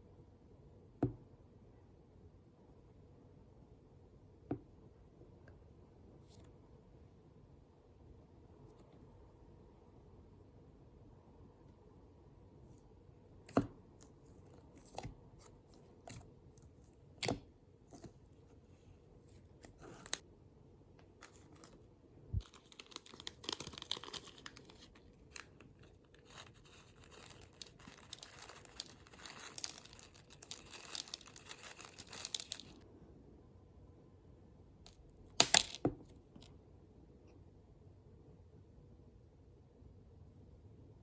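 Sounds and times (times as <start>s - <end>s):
slime crackling and tearing: 22.4s - 32.8s.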